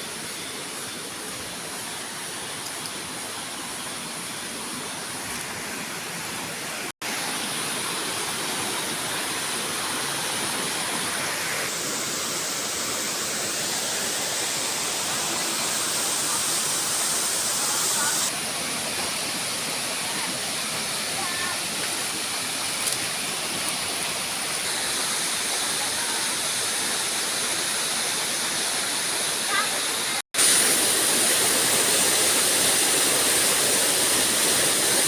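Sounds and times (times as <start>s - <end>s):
waterfall rushing water: 0.0s - 35.0s.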